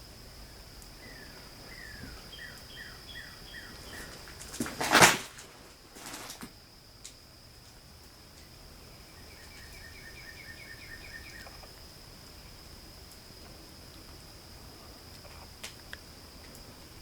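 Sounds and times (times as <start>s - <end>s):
high insect whine: 0.0s - 17.0s
scraping rustle: 3.7s - 6.6s.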